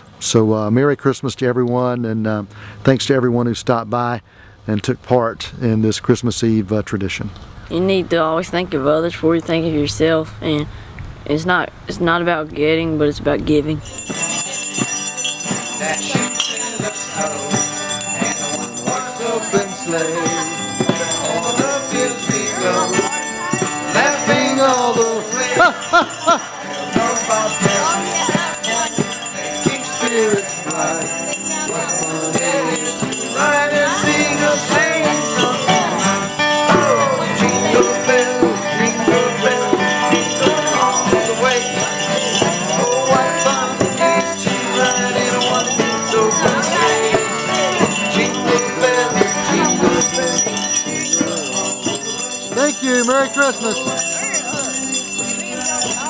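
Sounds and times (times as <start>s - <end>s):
handbells ringing: 13.8s - 56.0s
instrumental accompaniment: 13.9s - 56.0s
people singing: 13.9s - 56.0s.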